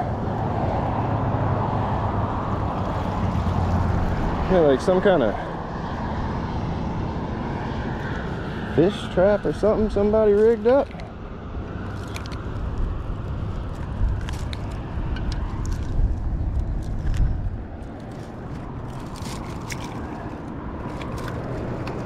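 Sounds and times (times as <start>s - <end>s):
road traffic rumble: 0.0s - 22.0s
wire fish trap clicks and scrapes: 11.8s - 22.0s.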